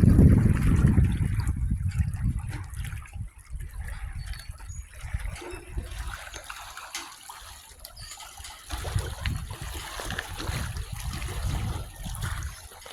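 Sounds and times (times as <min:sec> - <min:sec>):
low rumble: 0:00.0 - 0:03.1
water trickling: 0:00.0 - 0:12.9.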